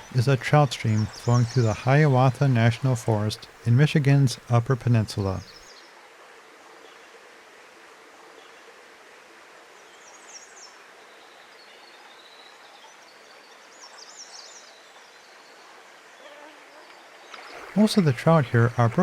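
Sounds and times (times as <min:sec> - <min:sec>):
stream flowing: 0:00.0 - 0:19.0.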